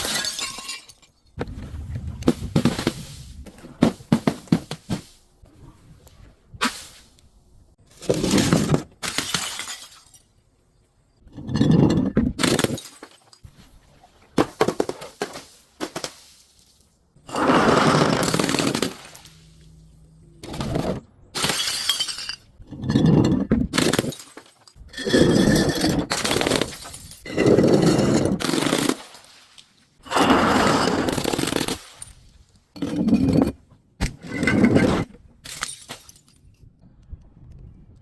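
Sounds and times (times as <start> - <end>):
glass bottles breaking and crunching: 0.0 - 1.4, 8.0 - 10.3, 11.4 - 13.5, 17.9 - 19.4, 20.5 - 29.4, 30.6 - 33.6, 34.2 - 36.5.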